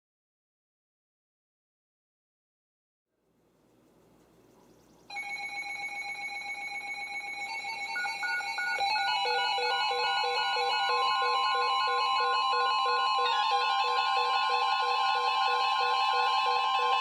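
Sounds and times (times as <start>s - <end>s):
steady electronic alarm tones: 5.0s - 17.0s
pulsing alarm beeps: 5.1s - 17.0s.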